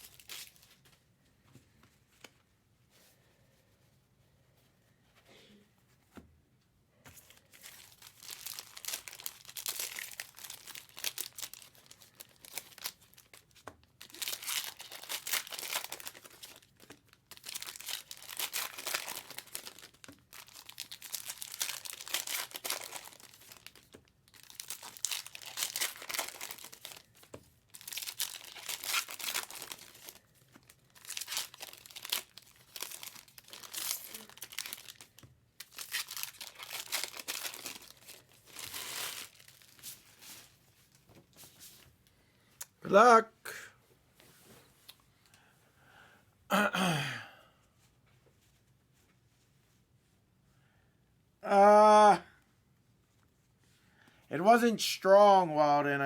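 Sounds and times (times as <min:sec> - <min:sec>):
card pack wrappers tearing and crinkling: 0:00.0 - 0:00.7, 0:07.5 - 0:40.6.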